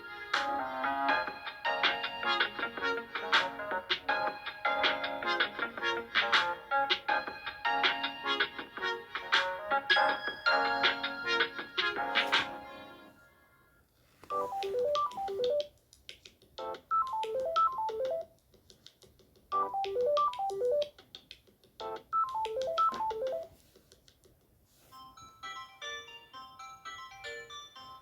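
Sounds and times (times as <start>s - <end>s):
fast dense ringtone: 14.3s - 15.6s, 19.6s - 20.9s, 21.9s - 23.5s
phone ringtone melody: 14.3s - 15.7s, 16.6s - 18.3s, 19.6s - 20.9s, 21.9s - 23.5s, 25.0s - 28.0s.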